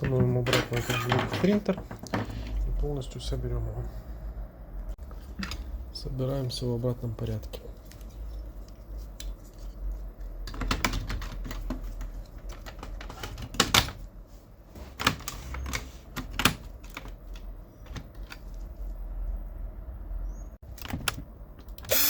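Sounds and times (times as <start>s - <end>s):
printer parts clicking and knocking: 0.0s - 2.5s, 10.4s - 14.0s.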